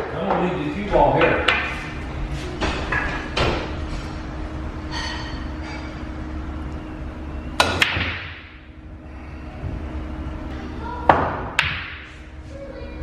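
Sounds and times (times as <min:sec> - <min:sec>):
billiard balls clacking: 0:00.0 - 0:02.0, 0:07.6 - 0:08.7, 0:11.0 - 0:12.3.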